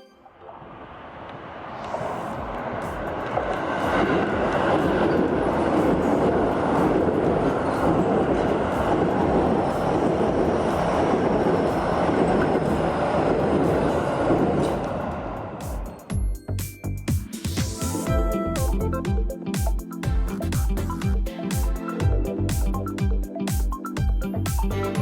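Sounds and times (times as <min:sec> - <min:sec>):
electric train wheels rumbling: 0:00.5 - 0:16.1.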